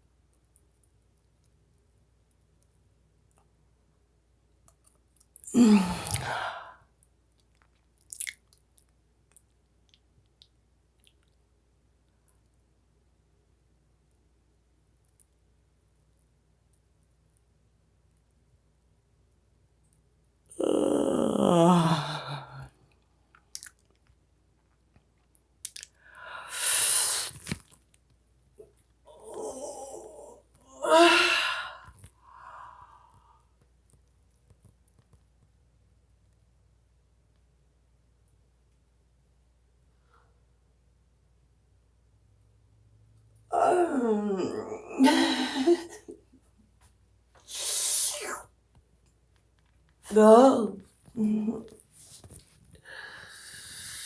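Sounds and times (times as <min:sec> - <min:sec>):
long breathy sigh: 0:05.5 - 0:06.8, 0:20.6 - 0:22.7, 0:29.1 - 0:33.5, 0:43.5 - 0:46.0, 0:52.8 - 0:54.0
person yawning: 0:05.5 - 0:06.8, 0:20.5 - 0:22.7, 0:29.1 - 0:31.9, 0:43.5 - 0:46.0
wet mouth click: 0:23.4 - 0:24.1, 0:25.2 - 0:26.0.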